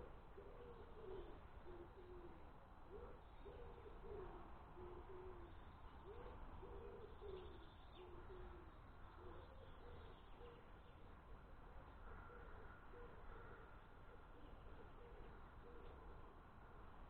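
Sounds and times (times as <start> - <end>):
pigeon cooing: 0.4 - 5.5, 6.1 - 8.7.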